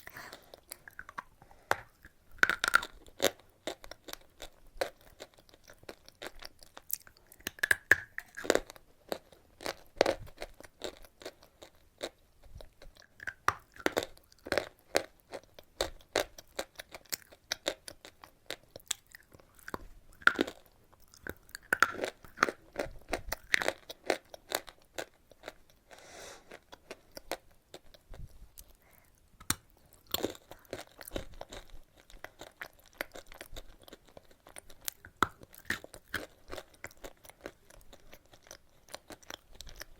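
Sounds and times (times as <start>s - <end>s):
chewing chalk crunches: 26.5s - 39.9s.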